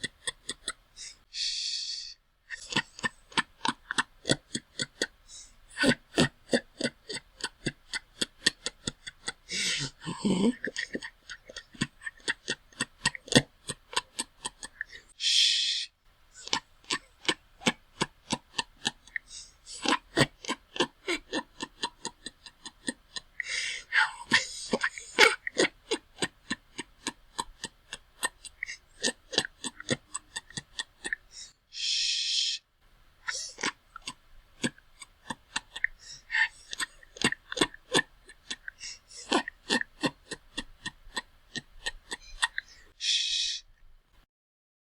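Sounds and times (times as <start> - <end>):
person laughing quietly: 0.0 - 1.3, 2.5 - 15.2, 16.3 - 31.5, 33.2 - 43.7
sharp breathy in-breaths: 31.3 - 32.6, 42.7 - 43.7.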